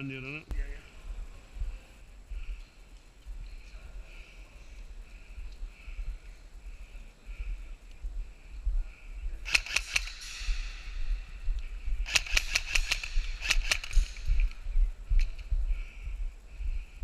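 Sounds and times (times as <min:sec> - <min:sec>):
airsoft guns firing rapidly: 0:09.4 - 0:10.2, 0:12.0 - 0:14.4.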